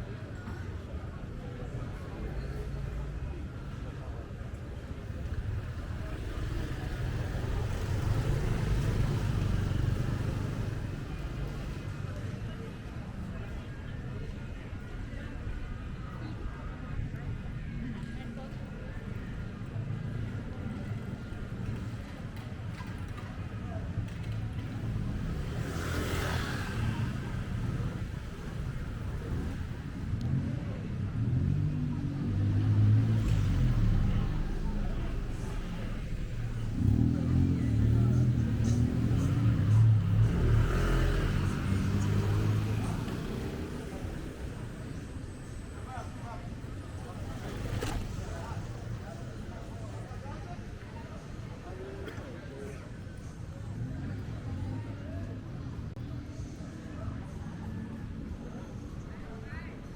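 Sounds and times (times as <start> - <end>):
street noise: 0.0 - 59.9
vehicle engine rumble passing: 24.2 - 50.6.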